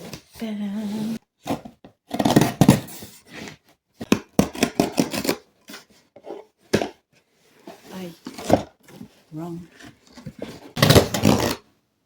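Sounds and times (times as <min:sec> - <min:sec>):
packaging being cut and rustled: 0:04.1 - 0:05.8, 0:09.8 - 0:11.6.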